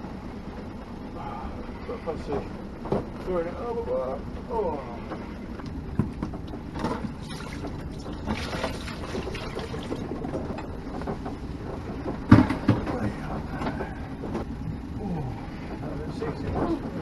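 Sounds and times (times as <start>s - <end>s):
water and hull noise: 0.0s - 17.0s
knocks on boat: 5.9s - 8.5s, 12.0s - 13.0s.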